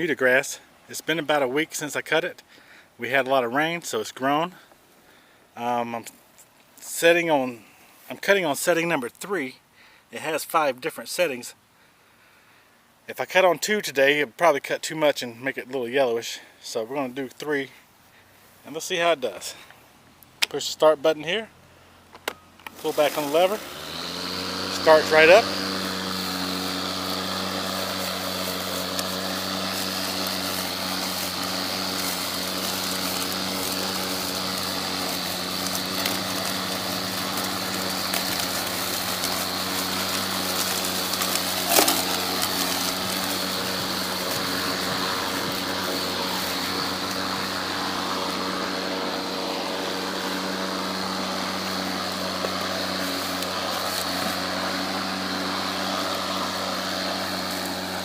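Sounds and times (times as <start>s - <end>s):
electric lawn mower humming: 22.1s - 58.0s.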